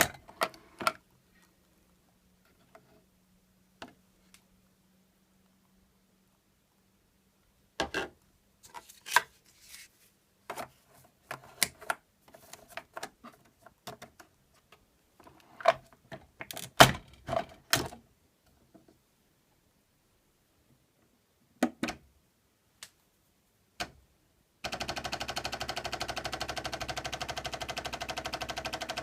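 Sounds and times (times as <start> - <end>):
plastic parts clicking and knocking: 0.0 - 1.0, 10.5 - 18.0.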